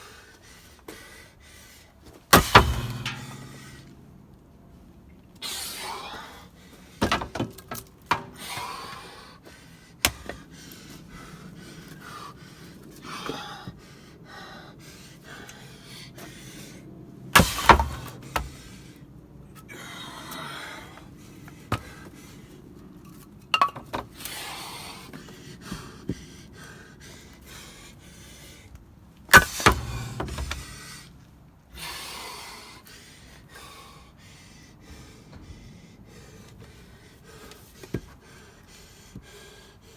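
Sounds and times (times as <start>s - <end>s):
firewood splitting strikes and cracks: 2.3s - 4.0s, 17.4s - 18.7s, 29.3s - 31.0s.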